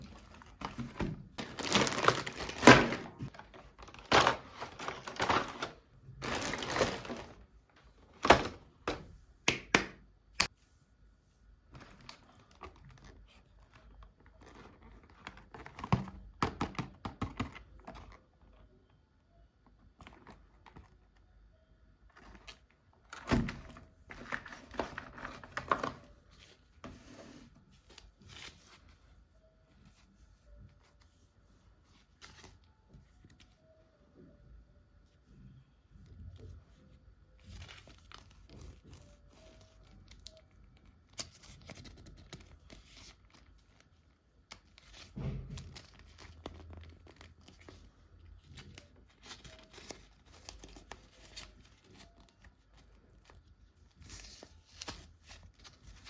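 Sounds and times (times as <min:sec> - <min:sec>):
plastic packaging crinkling and tearing: 0:00.2 - 0:07.4, 0:44.5 - 0:56.0.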